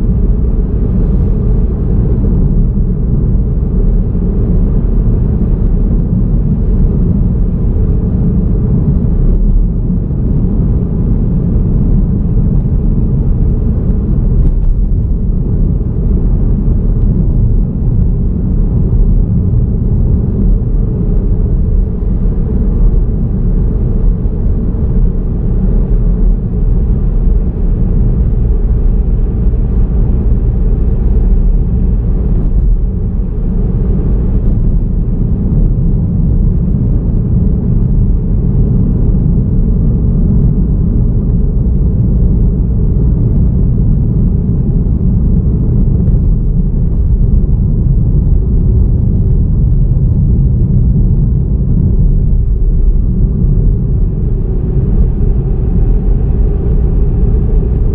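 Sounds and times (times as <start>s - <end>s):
car driving on road rumble: 0.0s - 57.9s.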